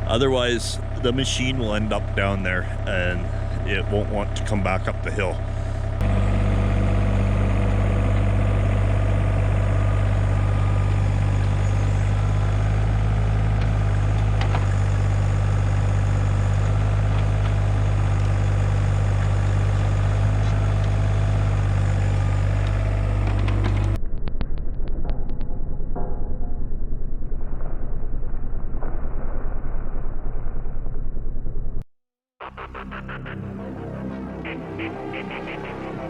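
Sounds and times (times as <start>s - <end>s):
diesel engine running: 0.0s - 24.0s, 32.4s - 36.0s.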